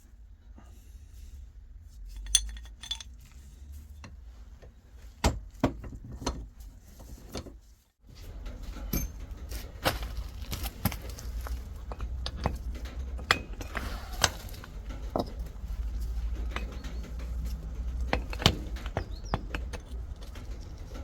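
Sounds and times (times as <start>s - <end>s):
metal parts and tools clinking: 2.1s - 4.2s, 8.2s - 21.0s.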